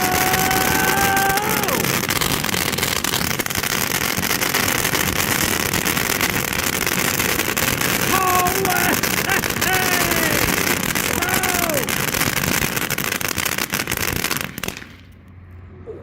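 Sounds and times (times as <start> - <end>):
person exclaiming: 0.0 - 2.0, 8.0 - 12.0
firework fountain hissing and crackling: 0.0 - 15.3.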